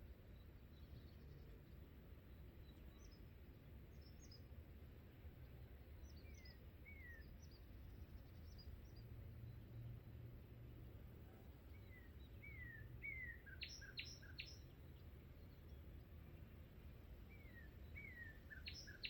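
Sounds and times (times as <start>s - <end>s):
birds chirping: 11.4s - 19.0s.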